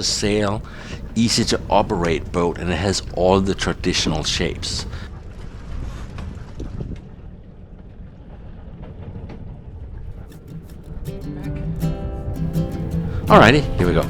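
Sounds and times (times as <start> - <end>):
acoustic guitar music: 0.0 - 5.0, 10.2 - 14.0
wind and water rumble: 0.0 - 14.0.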